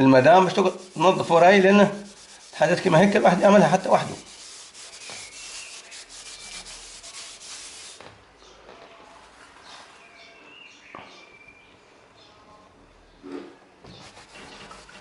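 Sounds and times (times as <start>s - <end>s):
scrubbing strokes: 0.0s - 8.0s, 14.0s - 15.0s.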